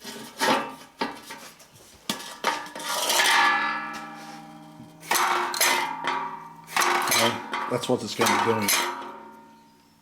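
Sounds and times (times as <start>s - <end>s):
ringing metallic hum: 3.1s - 10.0s
cans clattering in can crusher: 5.0s - 9.2s.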